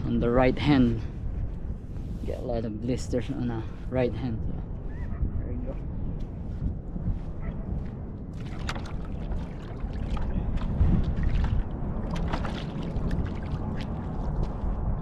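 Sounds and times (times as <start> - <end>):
steady low rumble: 0.0 - 15.0
bait pump squelching in mud: 8.4 - 10.3.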